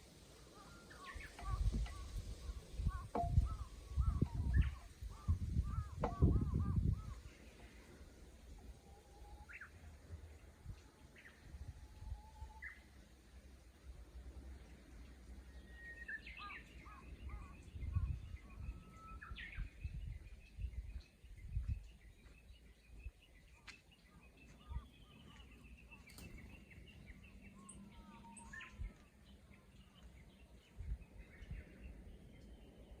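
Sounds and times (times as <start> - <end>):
bird chirps: 0.6 - 7.8, 15.6 - 32.9.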